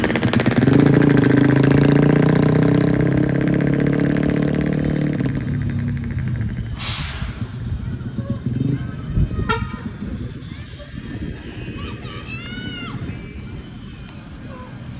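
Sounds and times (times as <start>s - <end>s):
bus diesel engine running: 0.0s - 14.9s
air hissing: 6.8s - 7.6s.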